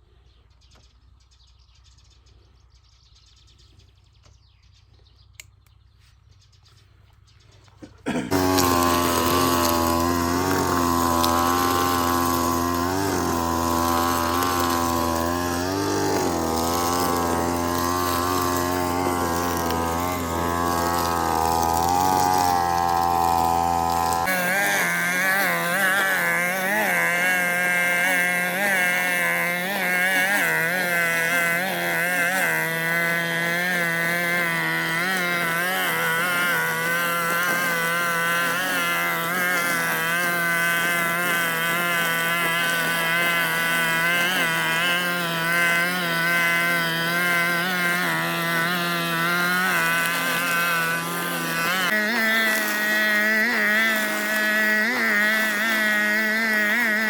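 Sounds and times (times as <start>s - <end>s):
brush cutter engine running: 6.8s - 57.0s.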